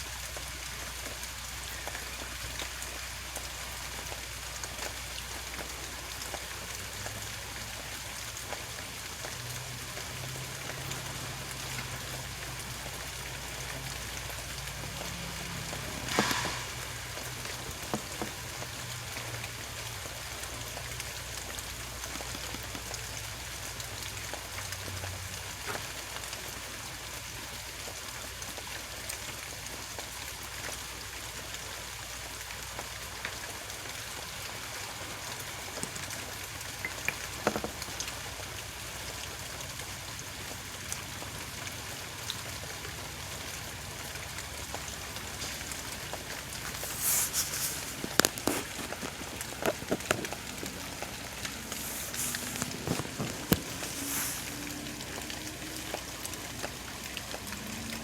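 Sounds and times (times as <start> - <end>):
steady hiss: 0.0 - 23.5, 42.9 - 57.0.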